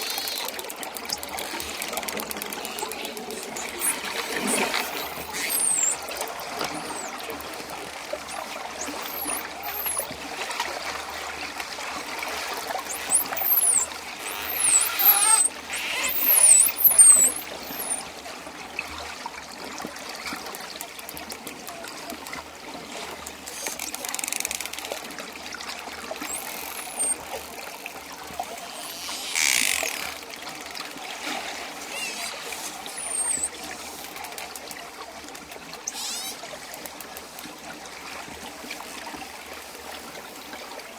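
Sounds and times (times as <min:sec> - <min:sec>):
dolphin whistles: 0:00.0 - 0:10.2, 0:12.8 - 0:18.0, 0:26.2 - 0:27.6, 0:28.5 - 0:30.2, 0:31.2 - 0:34.2, 0:35.9 - 0:36.4
water splashing: 0:00.0 - 0:10.7, 0:12.0 - 0:18.1, 0:26.0 - 0:37.4.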